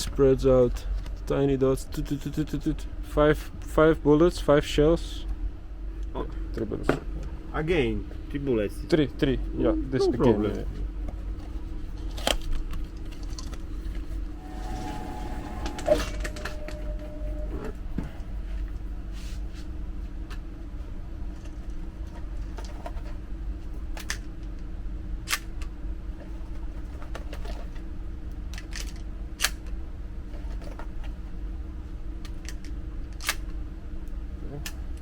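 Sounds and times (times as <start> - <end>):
steady low hum: 13.9 - 21.1.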